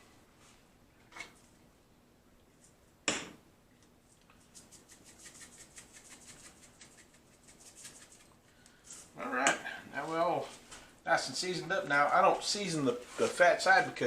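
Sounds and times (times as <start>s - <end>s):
seasoning shaker rattling: 4.4s - 8.4s.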